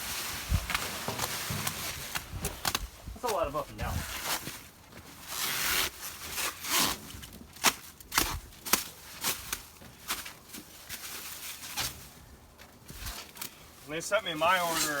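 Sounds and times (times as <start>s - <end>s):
cardboard boxes knocking and scuffing: 0.0s - 5.2s
footsteps: 0.5s - 5.1s.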